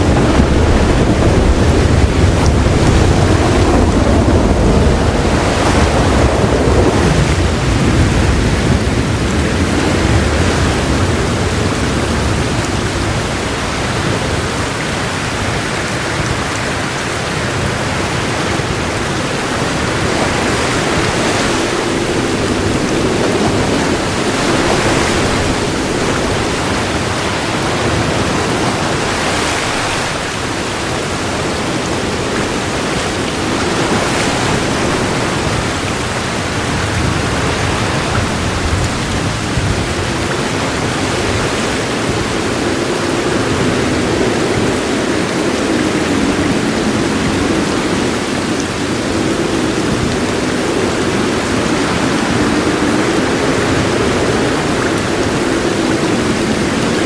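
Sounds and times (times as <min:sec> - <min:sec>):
thunder rolling: 0:00.0 - 0:14.8, 0:15.4 - 0:42.3
heavy rain falling: 0:00.0 - 0:57.0.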